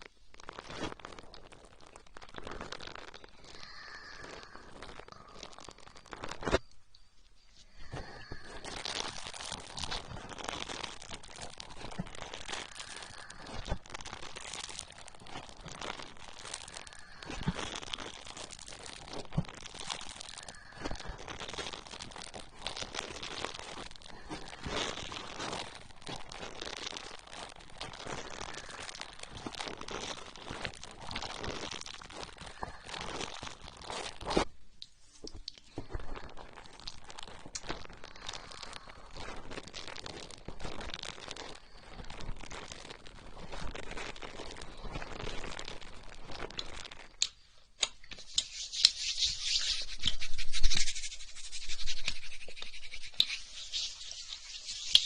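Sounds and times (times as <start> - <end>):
gel rubbed on microphone: 48.2 - 55.0.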